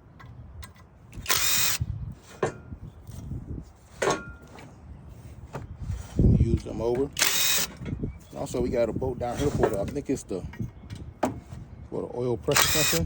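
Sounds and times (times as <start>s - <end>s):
impact driver bursts: 1.2s - 1.8s, 7.1s - 7.8s, 12.5s - 13.0s.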